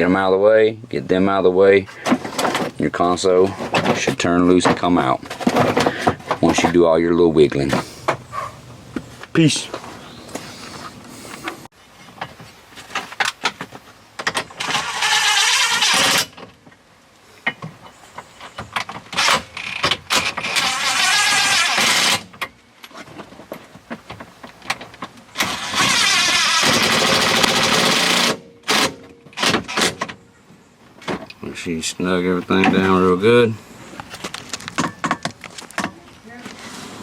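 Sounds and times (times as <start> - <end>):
tool handling clicks and knocks: 3.4 - 6.8
power driver running: 7.8 - 11.7.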